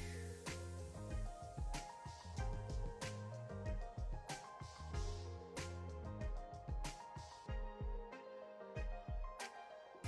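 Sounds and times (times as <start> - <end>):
deep kick drum beats: 0.0 - 5.3, 6.1 - 8.1.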